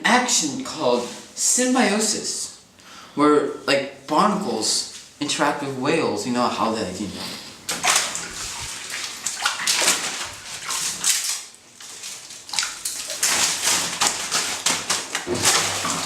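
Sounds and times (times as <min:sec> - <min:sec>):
water splashing in a bathtub: 0:07.5 - 0:16.0.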